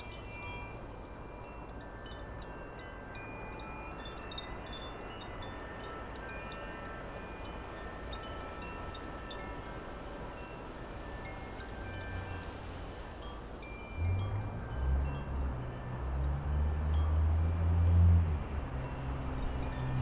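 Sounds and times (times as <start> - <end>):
wind chimes ringing: 0.0 - 20.0
wind rumble on microphone: 0.0 - 20.0.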